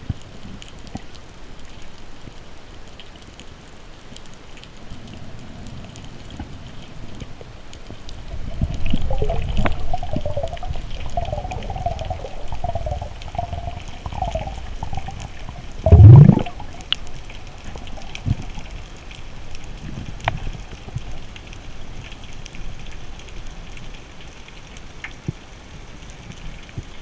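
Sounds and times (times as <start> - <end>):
water gurgling and sloshing: 7.8 - 21.2
loud rush of water: 8.2 - 19.9.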